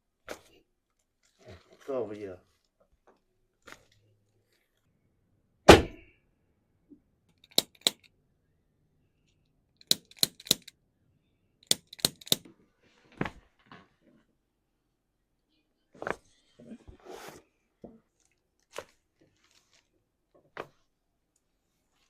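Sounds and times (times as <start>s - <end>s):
thud: 5.7s - 6.1s
joint cracks and clicks: 7.3s - 8.1s, 9.8s - 10.7s, 11.6s - 12.5s.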